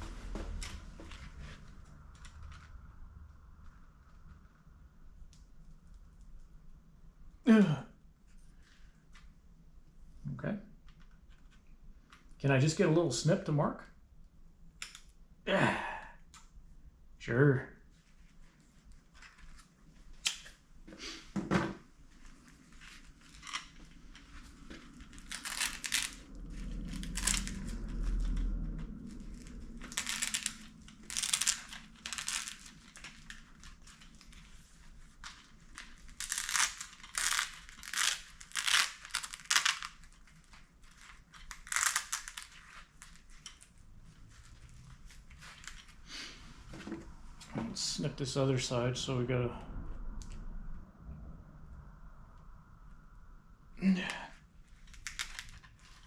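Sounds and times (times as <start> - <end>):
rustling handling noise: 21.8 - 47.8.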